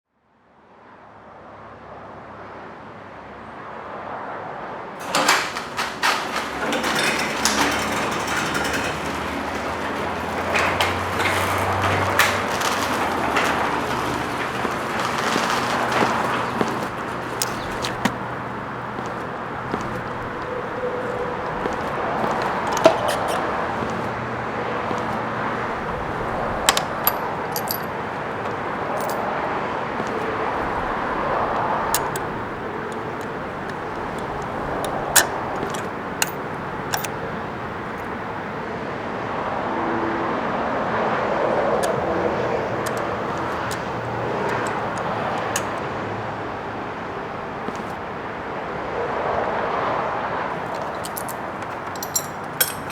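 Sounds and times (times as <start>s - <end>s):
sharp clicks and clinks: 5.0s - 29.3s, 30.0s - 37.2s, 50.6s - 52.9s
cars passing: 5.0s - 38.6s, 40.2s - 46.4s, 47.2s - 52.9s.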